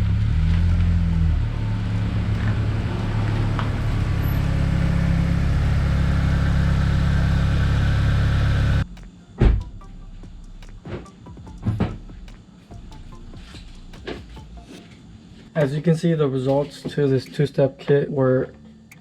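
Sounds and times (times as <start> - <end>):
car engine running: 0.0 - 14.6
thump: 9.4 - 9.7.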